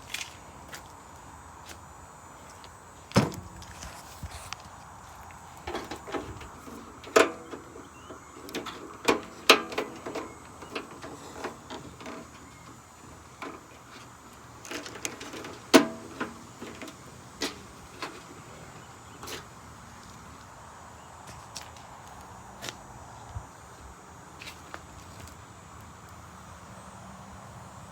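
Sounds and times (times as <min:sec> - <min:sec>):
metal parts knocking and clanking: 0:05.7 - 0:18.3.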